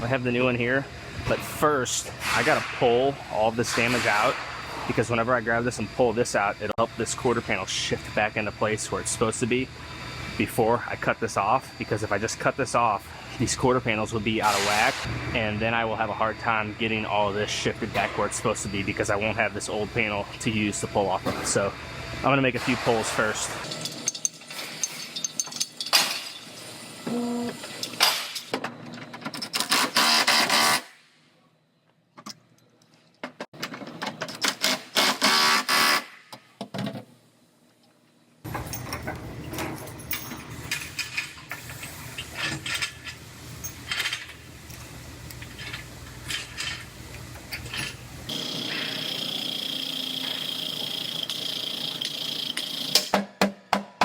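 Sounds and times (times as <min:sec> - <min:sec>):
steady low hum: 0:00.0 - 0:27.6.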